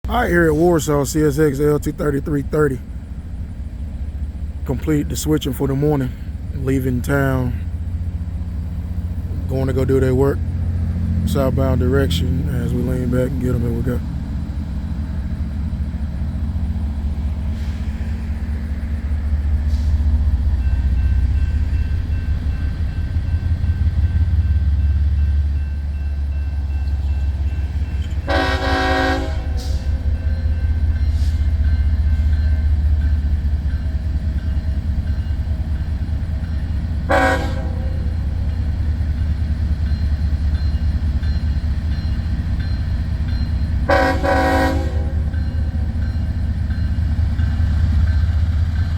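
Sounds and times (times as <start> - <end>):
diesel locomotive engines rumbling: 0.0 - 48.9
locomotive horn: 28.0 - 30.2, 37.1 - 38.3, 43.8 - 45.4.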